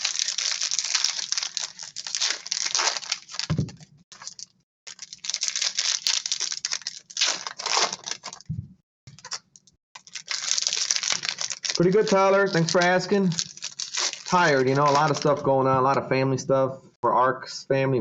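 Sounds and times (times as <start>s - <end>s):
foil wrappers crinkling and tearing: 0.0s - 8.5s, 9.1s - 9.4s, 10.0s - 15.4s
soft low thumps: 3.5s - 3.9s, 8.4s - 8.8s.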